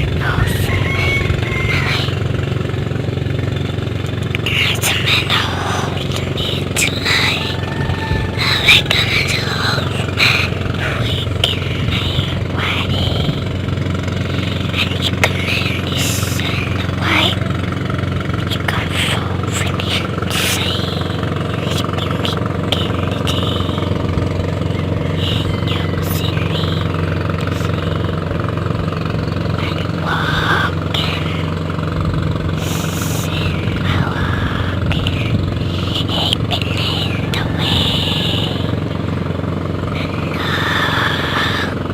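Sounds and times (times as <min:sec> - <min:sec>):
small engine running: 0:00.0 - 0:41.9.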